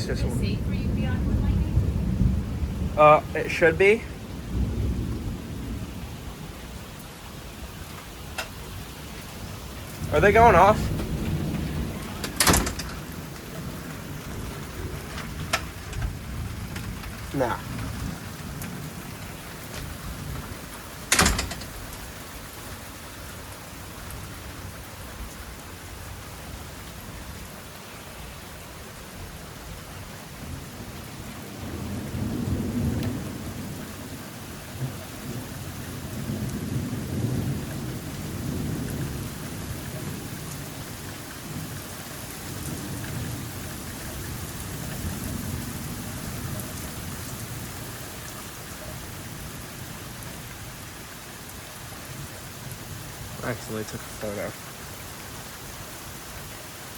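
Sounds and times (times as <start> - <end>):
thunder rolling: 0.0 - 7.0, 7.8 - 22.2, 30.4 - 40.6
heavy rain: 0.0 - 56.9.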